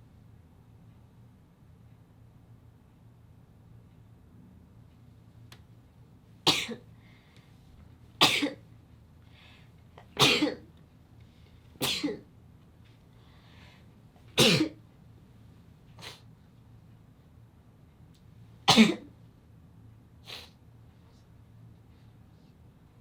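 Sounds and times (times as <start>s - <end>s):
person sneezing: 16.0s - 16.3s, 20.2s - 20.6s.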